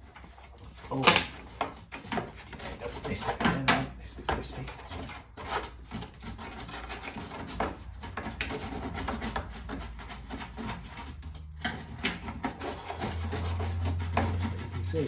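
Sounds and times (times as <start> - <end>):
hand brush scrubbing dirt: 12.6 - 15.0.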